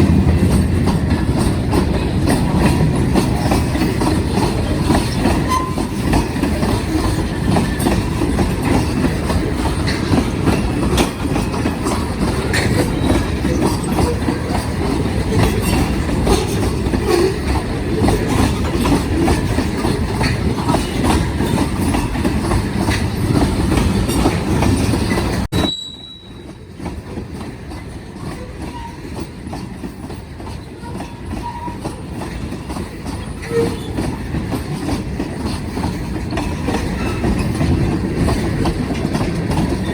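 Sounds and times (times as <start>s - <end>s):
train wheels clacking over rail joints: 0.0s - 39.9s.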